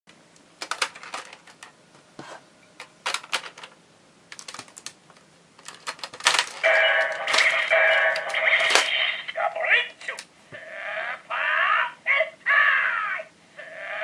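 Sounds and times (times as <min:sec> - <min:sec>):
toy electronic sound effect: 0:06.6 - 0:10.2.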